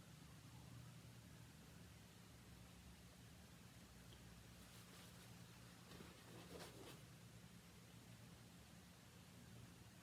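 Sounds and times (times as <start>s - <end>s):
low electrical hum: 0.0s - 10.0s
faint light scratching: 4.6s - 7.1s.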